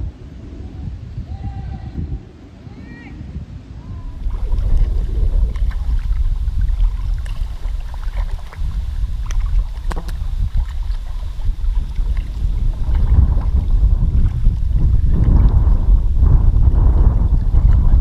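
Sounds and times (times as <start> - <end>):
wind buffeting microphone: 0.0 - 18.0
water knocks and splashes: 4.2 - 18.0.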